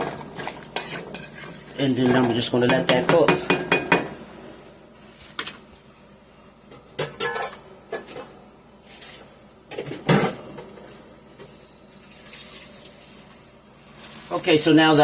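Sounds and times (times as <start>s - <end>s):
cookware clinking and knocking: 7.0s - 8.2s.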